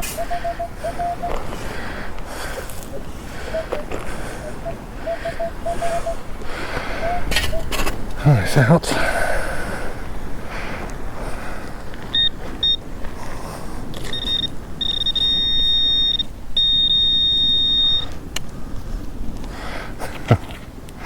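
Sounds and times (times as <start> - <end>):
metal detector beeps and tones: 0.0 - 1.5, 2.9 - 6.2, 12.1 - 12.9, 14.0 - 18.2.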